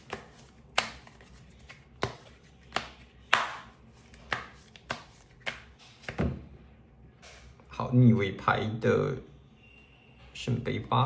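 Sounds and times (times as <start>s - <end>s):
cards snapping and tapping on table: 0.0s - 6.3s.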